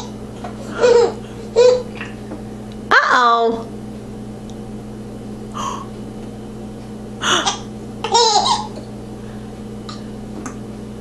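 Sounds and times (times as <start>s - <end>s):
baby giggling: 0.7s - 1.9s, 7.3s - 8.8s.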